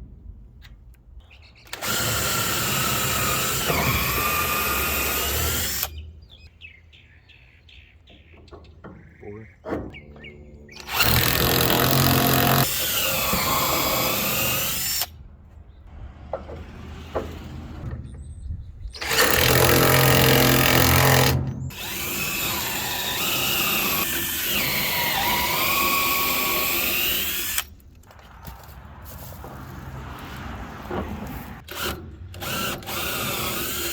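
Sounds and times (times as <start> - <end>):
power drill boring into wood: 1.7 - 5.9, 10.8 - 15.1, 19.0 - 27.7, 31.7 - 33.9.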